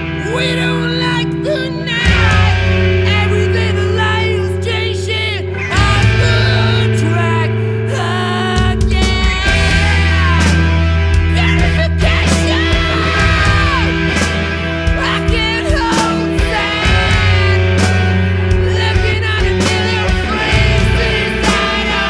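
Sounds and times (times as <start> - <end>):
bass: 0.0 - 22.0
distorted electric guitars: 0.0 - 22.0
sung vocals: 0.0 - 22.0
drums playing: 8.6 - 22.0.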